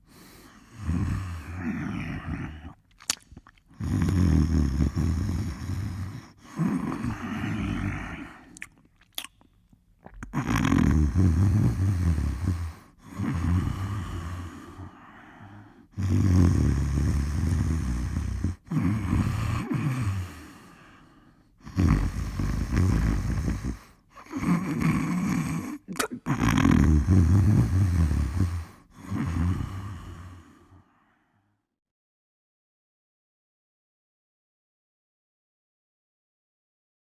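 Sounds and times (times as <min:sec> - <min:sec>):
person snoring: 0:00.0 - 0:02.8, 0:03.7 - 0:08.7, 0:10.3 - 0:30.9.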